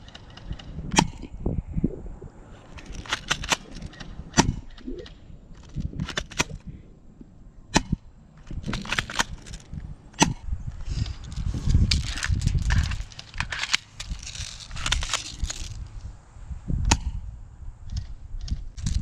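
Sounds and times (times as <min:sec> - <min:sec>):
rustling of movement: 0:00.0 - 0:16.3
airsoft gun shots: 0:07.7 - 0:08.0, 0:16.9 - 0:17.2.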